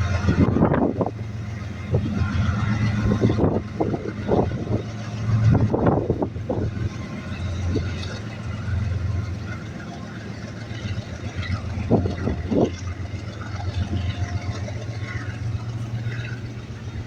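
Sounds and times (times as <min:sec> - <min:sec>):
freight train engine drone: 0:00.0 - 0:17.0.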